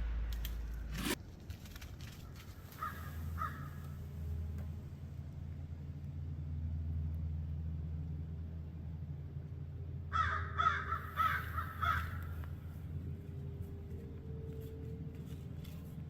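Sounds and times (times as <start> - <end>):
steady low rumble: 0.0 - 10.2
crow cawing: 2.3 - 4.1, 10.1 - 12.7.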